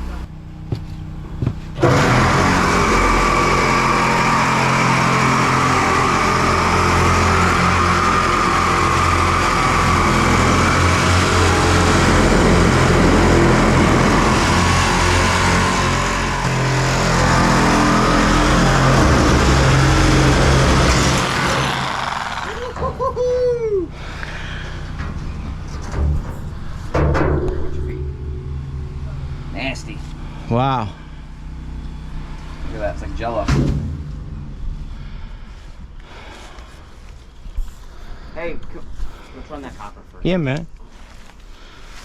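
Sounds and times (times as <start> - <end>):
power saw cutting steel: 1.7 - 23.1.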